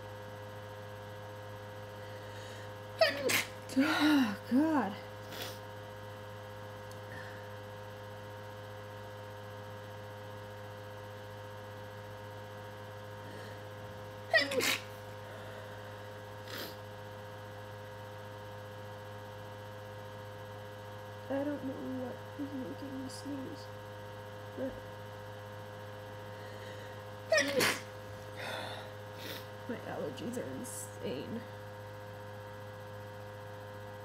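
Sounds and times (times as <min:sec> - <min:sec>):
electrical hum: 0:00.0 - 0:34.0
person sneezing: 0:03.0 - 0:04.4, 0:14.3 - 0:15.0, 0:16.4 - 0:16.8, 0:27.3 - 0:29.5.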